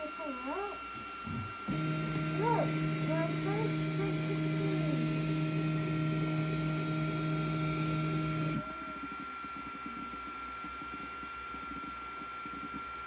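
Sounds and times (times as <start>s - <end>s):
faint high whine: 0.0s - 10.1s
printer running with steady hum: 0.0s - 13.0s.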